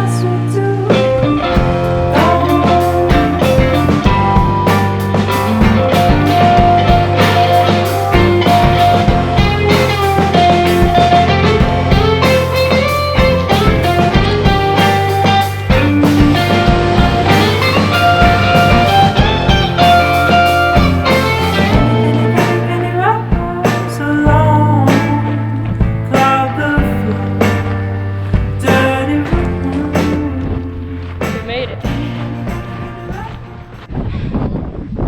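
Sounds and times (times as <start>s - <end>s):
electric guitar: 0.0s - 33.9s
bass: 0.0s - 34.1s
steady drums: 0.8s - 33.9s.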